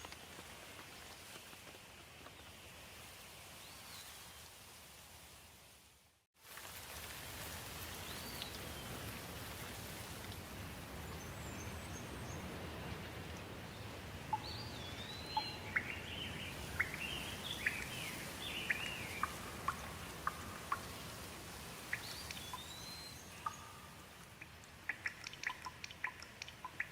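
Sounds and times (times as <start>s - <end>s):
light rain falling: 0.0s - 26.9s
songbirds chirping: 10.3s - 26.9s.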